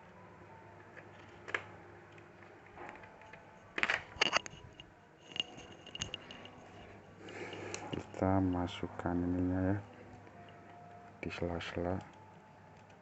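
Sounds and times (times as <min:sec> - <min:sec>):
plastic clicks and rattles: 0:01.0 - 0:06.6.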